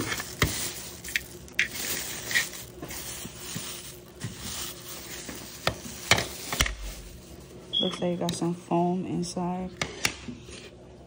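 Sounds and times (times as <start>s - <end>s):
packaging rustling and scraping: 0.0s - 7.7s.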